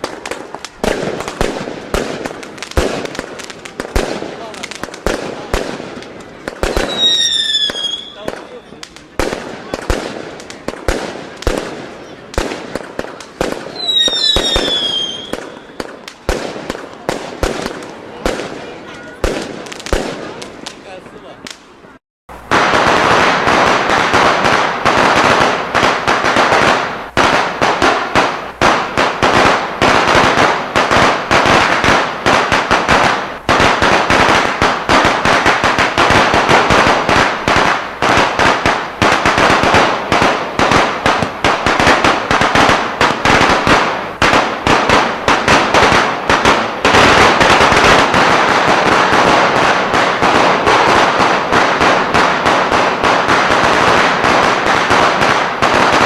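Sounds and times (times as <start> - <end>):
firecracker machine rapid cracks: 22.3 - 56.0.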